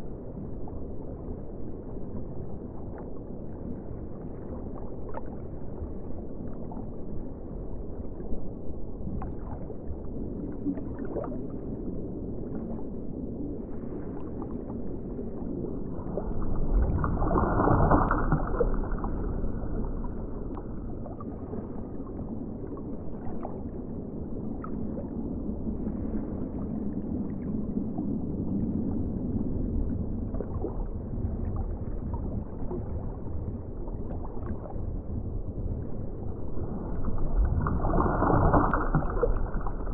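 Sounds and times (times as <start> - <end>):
underwater wash of moving water: 0.0 - 39.9
faint underwater clicks: 15.4 - 23.7.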